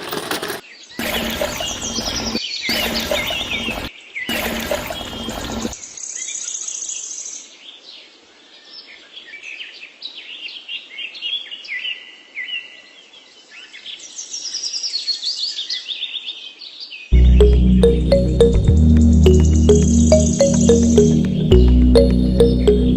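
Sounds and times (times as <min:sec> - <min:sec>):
birds chirping and singing: 0:00.8 - 0:03.9
loud music: 0:17.2 - 0:22.9.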